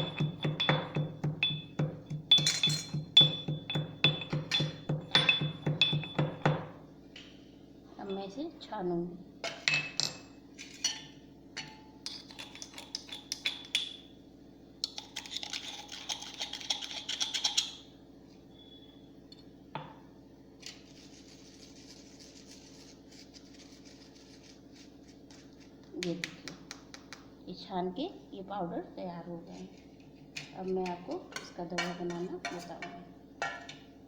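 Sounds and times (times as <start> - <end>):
sieve clicking and clinking: 0.0 - 6.5.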